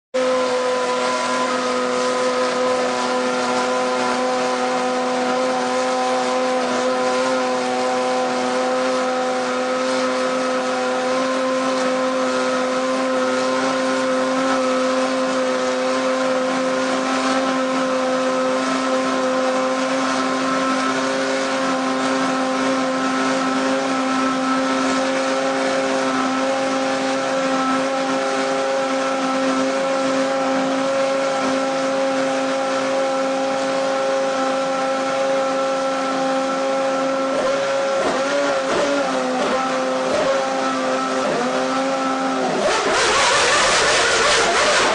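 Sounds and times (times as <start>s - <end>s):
racing car engine running steadily: 0.1s - 44.9s.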